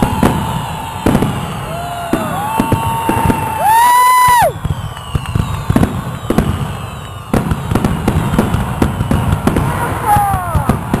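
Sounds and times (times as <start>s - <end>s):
falling whistle: 0.0s - 7.8s, 8.7s - 9.4s
fireworks bangs: 0.0s - 11.0s
fireworks crackling: 0.0s - 11.0s.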